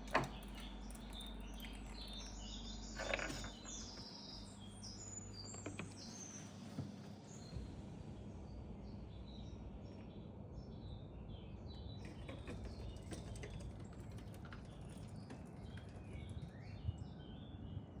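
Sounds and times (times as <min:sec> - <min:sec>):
small birds chirping: 0:00.0 - 0:07.6.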